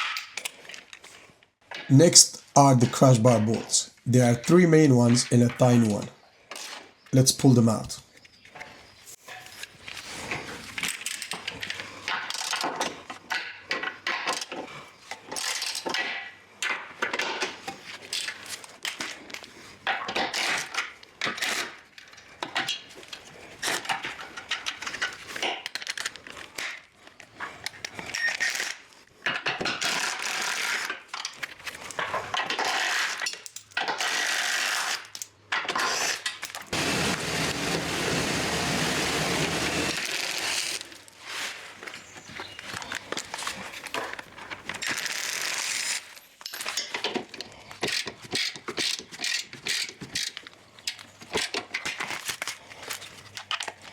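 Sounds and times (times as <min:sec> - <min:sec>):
impact wrench bursts: 0:36.8 - 0:40.9
metal bolts and tools clinking: 0:45.8 - 0:51.9.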